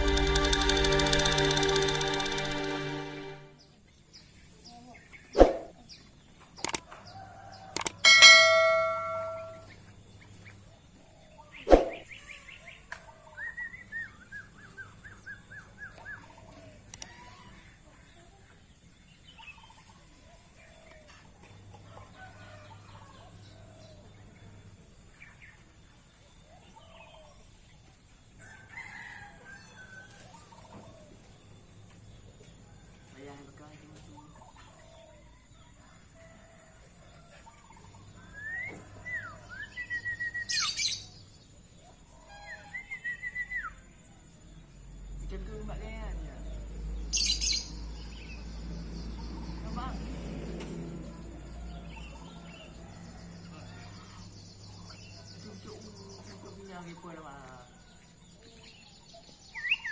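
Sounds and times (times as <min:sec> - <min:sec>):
quick chirps: 0:00.0 - 0:03.5
rooster crowing: 0:06.9 - 0:09.7, 0:21.8 - 0:24.1, 0:28.4 - 0:31.3, 0:34.8 - 0:40.6, 0:51.1 - 0:55.3.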